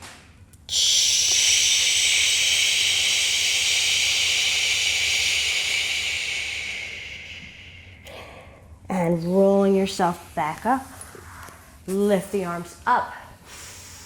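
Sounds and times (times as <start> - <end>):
forceful exhale hissing: 0.7 - 8.6.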